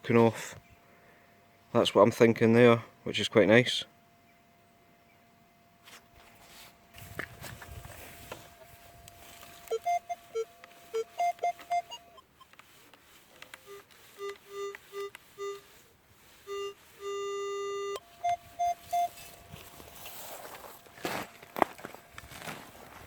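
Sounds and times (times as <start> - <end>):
long low detector tone: 8.2 - 12.8, 13.6 - 20.3
metal detector beeps: 8.6 - 12.9, 13.5 - 20.2.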